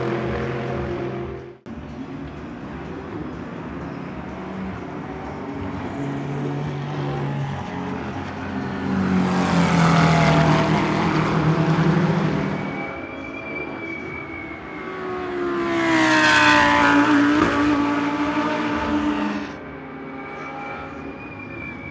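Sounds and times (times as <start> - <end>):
race car engine passing: 3.6 - 20.8.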